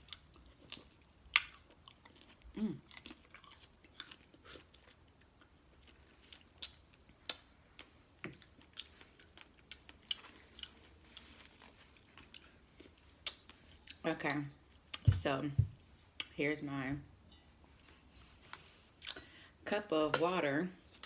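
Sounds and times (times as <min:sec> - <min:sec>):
wet chewing and lip smacking: 0:00.0 - 0:14.0.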